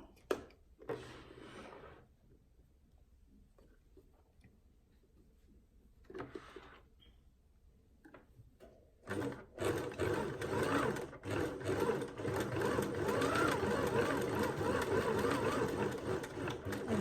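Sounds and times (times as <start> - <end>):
sewing machine running: 9.1 - 17.0.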